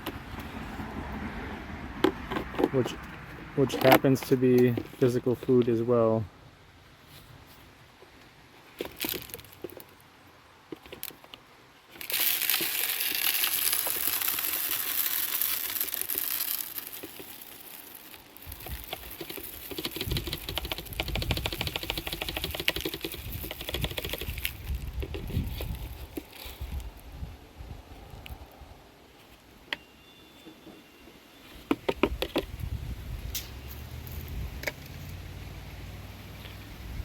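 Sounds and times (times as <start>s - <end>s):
rustling and crinkling: 1.9s - 6.2s, 6.9s - 35.2s
fast pattering ticks: 12.0s - 26.0s.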